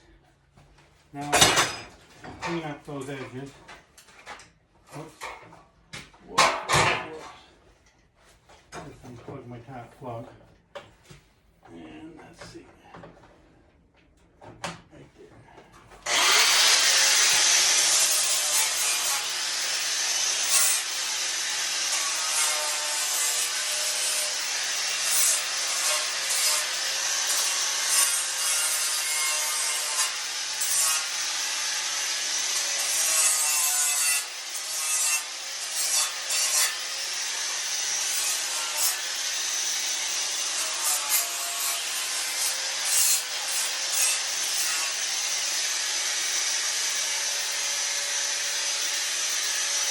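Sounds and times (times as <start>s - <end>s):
electric grinder grinding steel: 16.0s - 49.9s.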